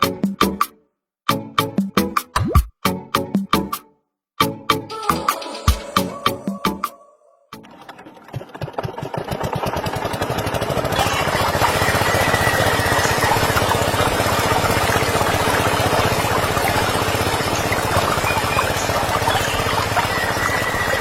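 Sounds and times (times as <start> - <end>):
small engine starting and running: 7.6 - 21.0.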